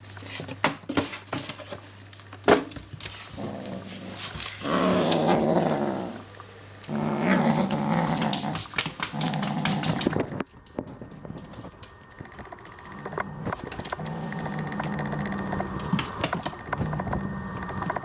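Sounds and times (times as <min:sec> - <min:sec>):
kitten growling: 0:03.3 - 0:10.4, 0:12.8 - 0:18.0.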